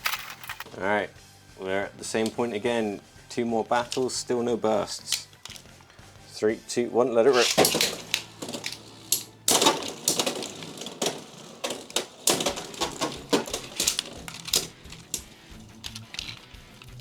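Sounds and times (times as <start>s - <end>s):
spinning tops clacking: 7.3s - 17.0s.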